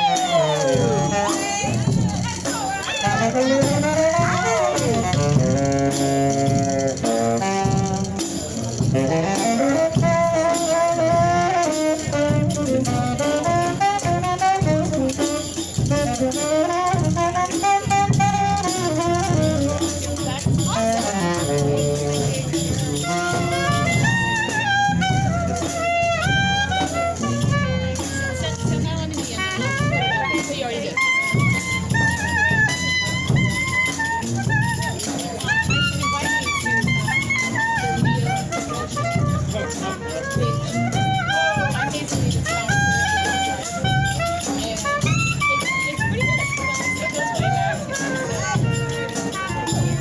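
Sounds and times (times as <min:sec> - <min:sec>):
brass band playing jazzy tune: 0:00.0 - 0:50.0
low bass line: 0:03.1 - 0:11.5.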